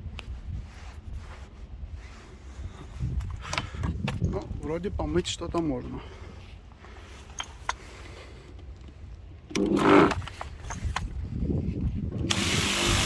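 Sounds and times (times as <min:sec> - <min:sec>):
loud pitched whirr: 0:12.3 - 0:13.0.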